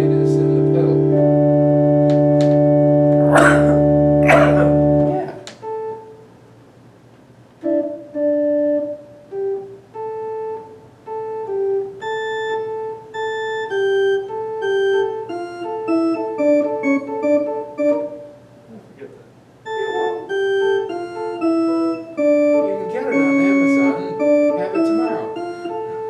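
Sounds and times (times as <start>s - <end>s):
electronic organ playing held notes: 0.0s - 4.2s, 7.6s - 18.4s, 19.6s - 26.0s.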